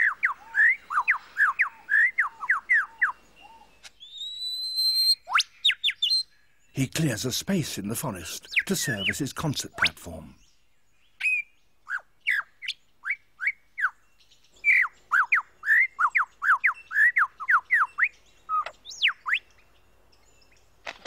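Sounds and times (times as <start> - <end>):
lyrebird whistled notes: 0.0 - 6.2.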